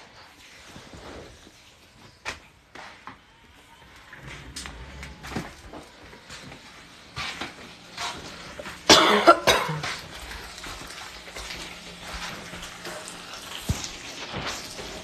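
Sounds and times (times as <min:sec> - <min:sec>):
person coughing: 0:08.9 - 0:10.0.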